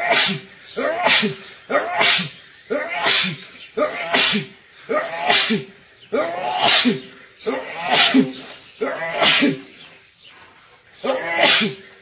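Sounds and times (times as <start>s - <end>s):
man sneezing: 0.0s - 0.4s, 1.0s - 3.4s, 4.1s - 4.5s, 5.2s - 5.7s, 6.4s - 7.1s, 7.8s - 8.4s, 9.2s - 9.6s, 11.4s - 11.8s.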